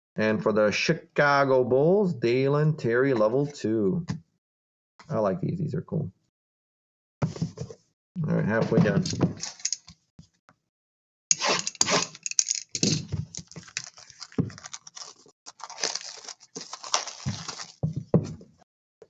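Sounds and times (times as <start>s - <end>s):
cards clicking and rustling: 9.4s - 9.9s, 11.4s - 17.9s
plastic wrapping crinkling and tearing: 12.9s - 18.0s.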